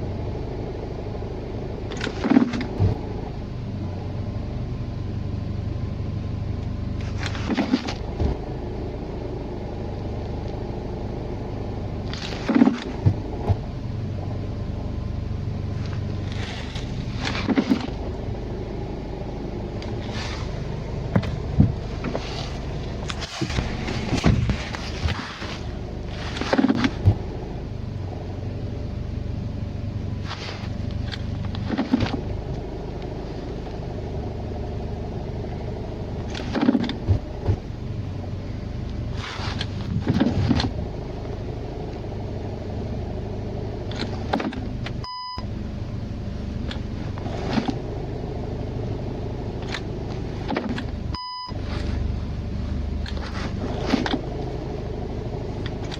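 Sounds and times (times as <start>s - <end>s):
engine running with rapid knock: 0.0s - 4.7s, 6.6s - 55.9s
short beeps: 45.0s - 45.5s, 51.1s - 51.6s.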